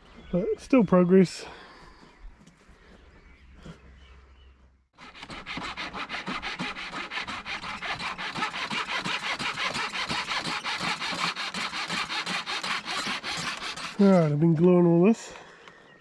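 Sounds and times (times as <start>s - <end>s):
sandpaper scrubbing wood: 5.0s - 14.3s.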